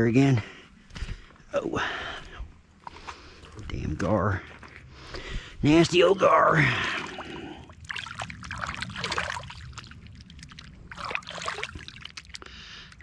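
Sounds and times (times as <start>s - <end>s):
water splashing and trickling: 5.7s - 13.0s.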